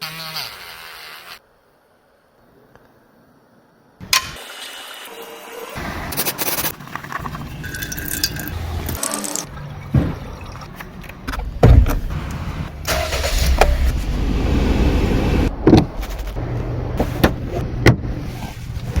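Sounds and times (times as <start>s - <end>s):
car engine rumbling: 8.4s - 19.0s.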